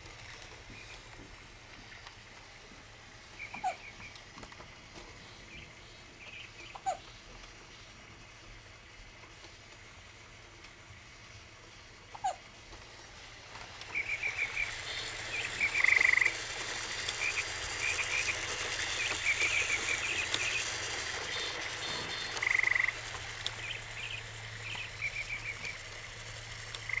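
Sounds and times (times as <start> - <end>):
high chirping animal calls: 13.9 - 16.4, 19.0 - 23.0.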